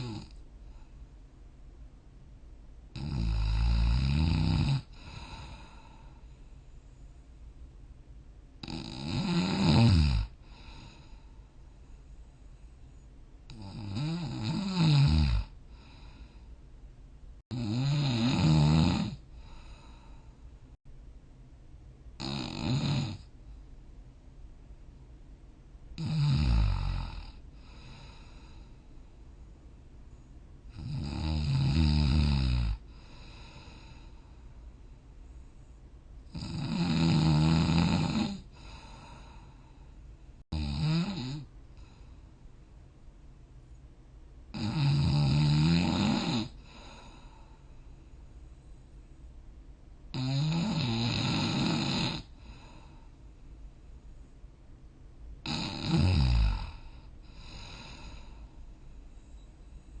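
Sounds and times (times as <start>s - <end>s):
person snoring: 0.0s - 0.4s, 2.9s - 6.2s, 8.6s - 11.3s, 13.5s - 16.5s, 17.5s - 20.3s, 22.2s - 23.3s, 26.0s - 28.7s, 30.7s - 34.3s, 36.3s - 39.6s, 40.5s - 42.1s, 44.5s - 47.6s, 50.1s - 53.1s, 55.4s - 58.6s
faint breathing: 0.0s - 1.4s, 4.9s - 7.8s, 10.3s - 13.7s, 15.5s - 16.8s, 19.2s - 20.8s, 27.3s - 30.7s, 32.8s - 36.2s, 38.4s - 40.5s, 41.7s - 42.8s, 46.5s - 49.4s, 52.2s - 54.7s, 56.6s - 60.0s.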